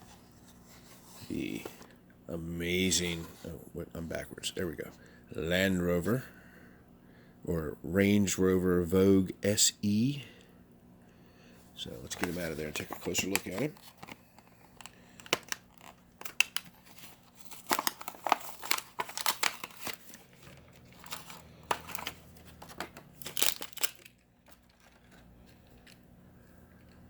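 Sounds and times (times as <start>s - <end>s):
plastic packaging tearing and crinkling: 12.1s - 26.0s.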